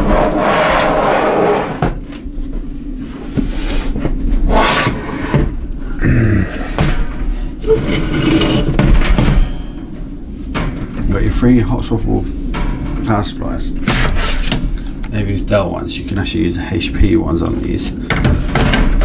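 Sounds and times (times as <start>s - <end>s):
metal case knocks and clunks: 8.0s - 11.1s, 18.0s - 19.0s.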